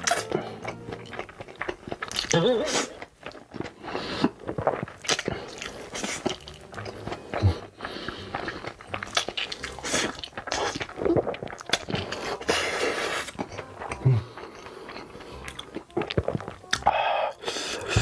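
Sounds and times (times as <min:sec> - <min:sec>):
person chewing crunchy food: 0:00.0 - 0:18.0.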